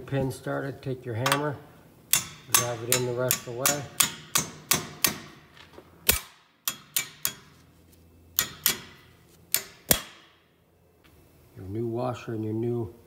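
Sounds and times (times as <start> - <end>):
hammer striking metal pin: 2.1 - 5.4, 6.1 - 7.6, 8.3 - 10.4.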